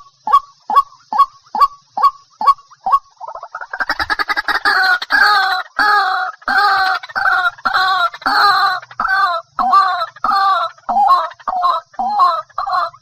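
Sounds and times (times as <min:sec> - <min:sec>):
waterhen calling: 0:00.0 - 0:13.0.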